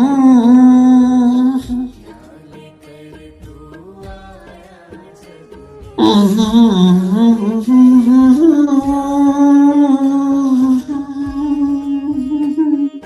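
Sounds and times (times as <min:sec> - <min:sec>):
person singing a long note: 0:00.0 - 0:02.0, 0:05.9 - 0:13.0
soft devotional music: 0:00.0 - 0:13.0.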